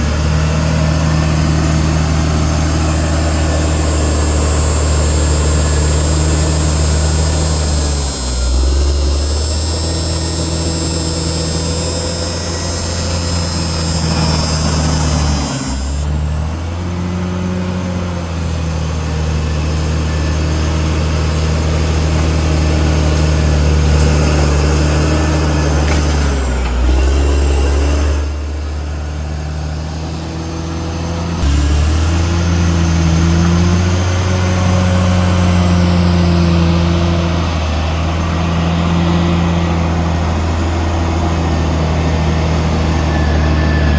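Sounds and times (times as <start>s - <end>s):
high hiss: 2.9s - 16.1s.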